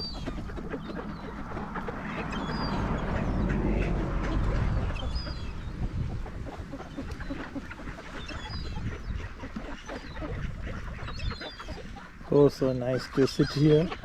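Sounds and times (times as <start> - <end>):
ducks quacking: 0.0 - 14.0
low rumble: 1.2 - 7.2.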